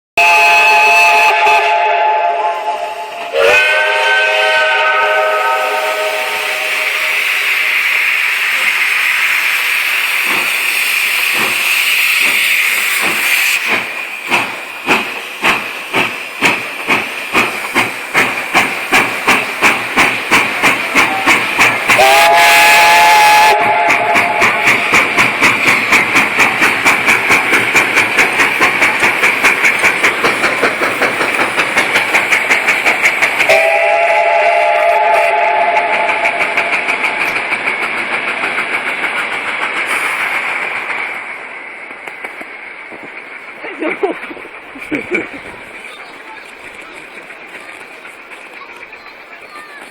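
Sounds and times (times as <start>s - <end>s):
steam whistle: 0.2s - 8.3s, 21.0s - 24.8s, 33.5s - 36.9s
steam hissing: 0.2s - 49.9s
steam locomotive chuffing: 0.2s - 49.9s.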